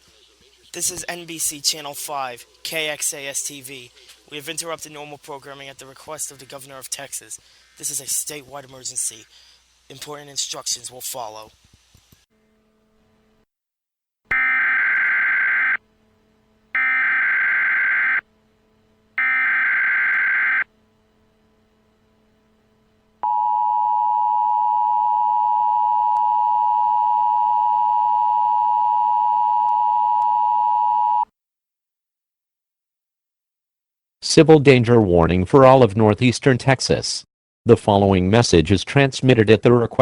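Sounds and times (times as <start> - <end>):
two-tone attention signal: 14.3 - 15.8, 16.8 - 18.2, 19.2 - 20.6
warbling data bursts: 14.3 - 15.8, 16.8 - 18.2, 19.2 - 20.6.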